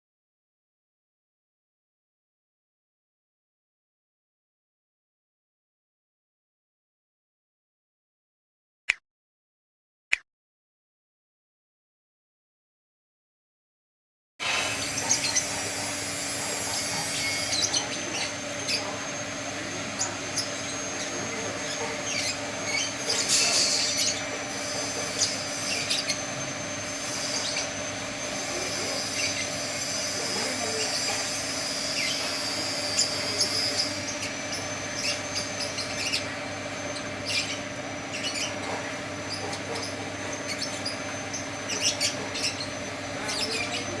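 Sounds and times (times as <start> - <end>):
rope spinning machine humming: 14.5 - 44.0
machine squeaks and clicks: 21.6 - 27.8, 38.2 - 43.4.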